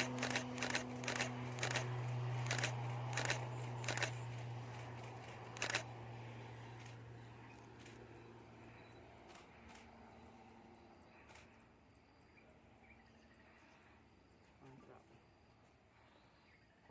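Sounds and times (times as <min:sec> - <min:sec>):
camera shutter clicking: 0:00.0 - 0:05.9
turboprop engines droning: 0:00.0 - 0:11.5.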